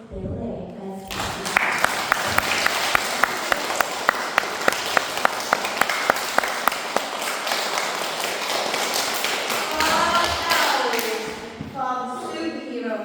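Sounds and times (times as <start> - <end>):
children applauding: 1.1 - 11.3
loud sharp nearby clapping: 1.1 - 11.4.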